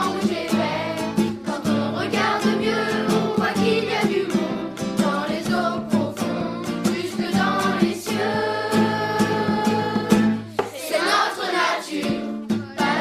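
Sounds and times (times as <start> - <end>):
instrumental accompaniment: 0.0 - 13.0
person singing: 12.5 - 13.0.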